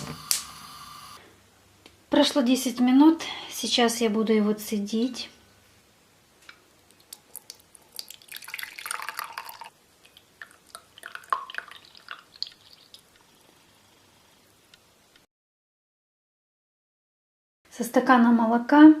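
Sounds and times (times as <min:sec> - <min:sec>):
liquid dripping: 0:06.8 - 0:13.6
liquid pouring into glass: 0:07.0 - 0:14.0.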